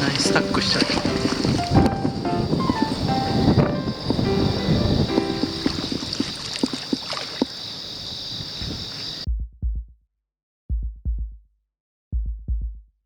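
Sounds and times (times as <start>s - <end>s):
heartbeat thumps: 0.0s - 7.0s, 8.6s - 10.0s, 10.7s - 11.4s, 12.1s - 12.9s
insects chirping: 0.0s - 9.3s.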